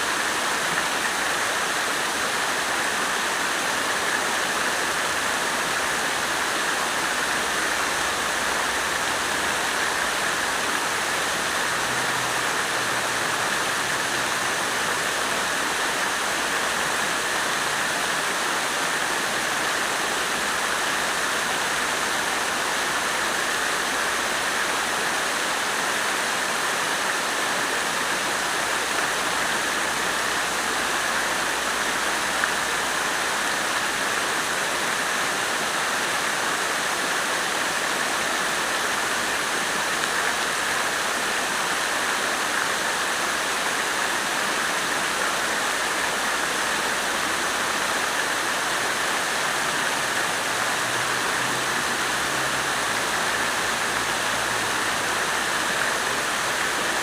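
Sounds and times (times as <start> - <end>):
water fountain splashing: 0.0 - 57.0.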